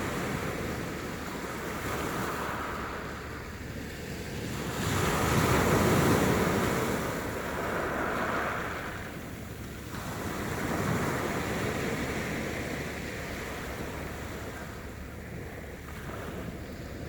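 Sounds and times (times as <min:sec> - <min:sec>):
sea waves washing: 0:00.0 - 0:17.0
wind on microphone: 0:00.0 - 0:17.0.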